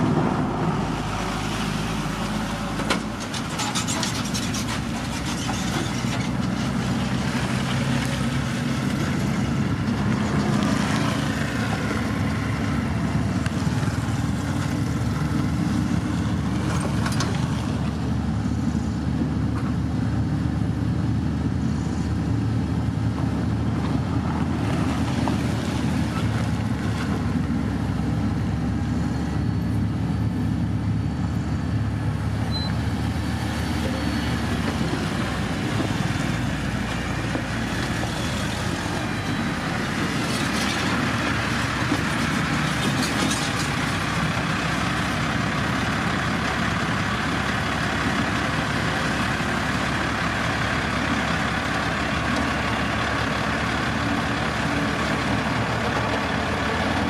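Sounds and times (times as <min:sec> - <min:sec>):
diesel engine droning: 0:00.0 - 0:57.0.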